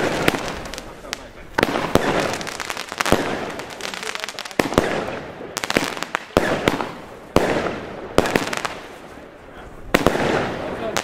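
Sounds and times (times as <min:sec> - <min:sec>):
firework hiss: 0:00.0 - 0:09.2
firework bangs: 0:00.0 - 0:11.0.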